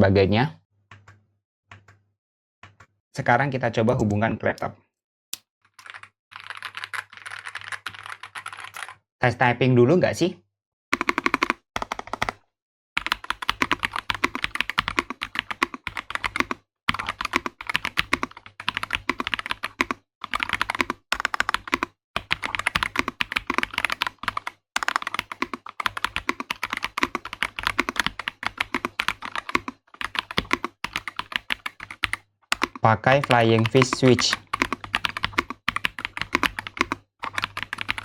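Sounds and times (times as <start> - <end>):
mechanical keyboard typing: 5.8 - 9.0, 11.0 - 12.4, 13.0 - 38.0.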